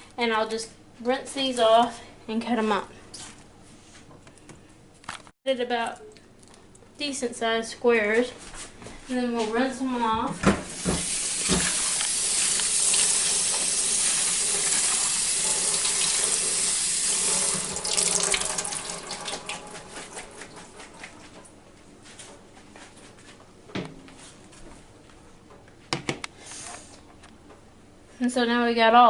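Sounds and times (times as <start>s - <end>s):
faucet running into sink: 10.7s - 20.6s.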